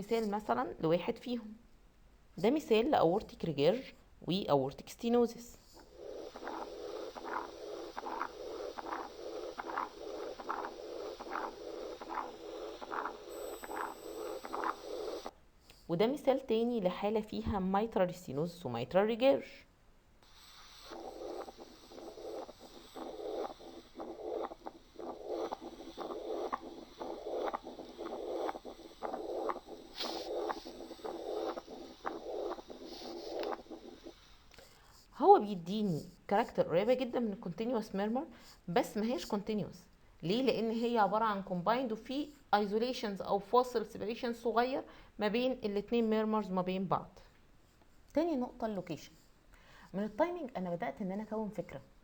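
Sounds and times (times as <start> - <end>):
heart murmur: 5.9 - 15.3, 20.6 - 34.2.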